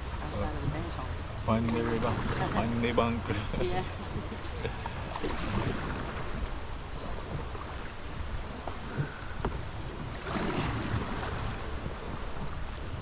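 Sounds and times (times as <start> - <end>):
river water rushing: 0.0 - 13.0
wind buffeting microphone: 0.0 - 13.0.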